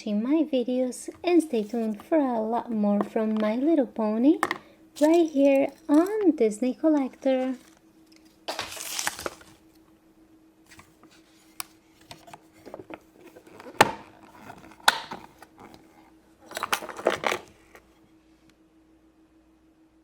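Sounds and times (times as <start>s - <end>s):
faint steady hum: 0.0s - 20.0s
packaging rustling: 7.0s - 9.7s, 10.7s - 17.8s.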